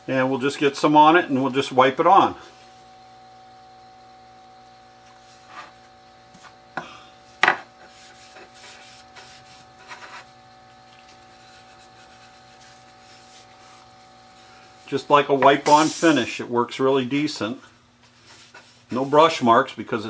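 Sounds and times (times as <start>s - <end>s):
cloth rubbing wood: 7.8s - 16.2s, 18.0s - 19.4s.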